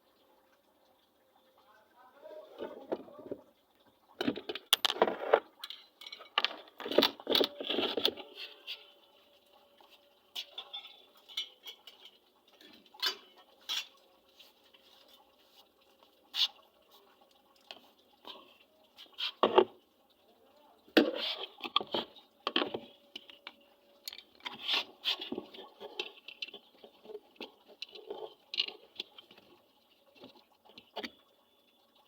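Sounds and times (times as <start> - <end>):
small metal parts clattering: 4.2 - 8.2.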